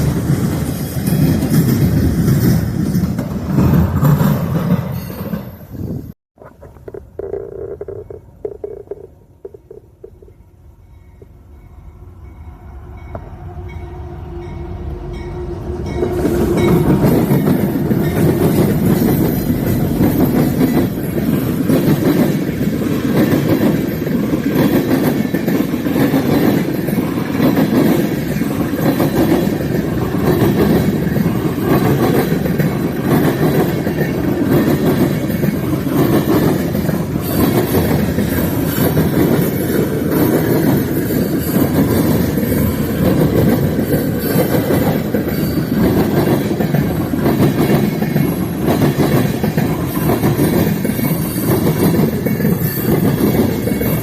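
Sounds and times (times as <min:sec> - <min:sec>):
freight train rumbling past: 0:00.0 - 0:06.2, 0:10.3 - 0:54.0
wheels clacking over rail joints: 0:15.9 - 0:54.0.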